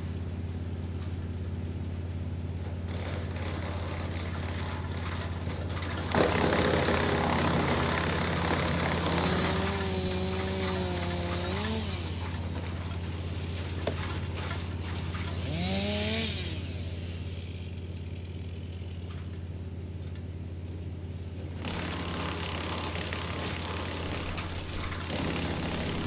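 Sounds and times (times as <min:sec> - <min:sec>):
wood chipper engine hum: 0:00.0 - 0:26.0.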